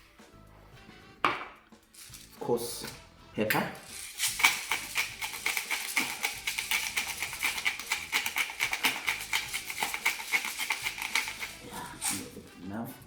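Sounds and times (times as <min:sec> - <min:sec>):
pepper mill grinding: 0:01.8 - 0:03.0, 0:03.8 - 0:12.5.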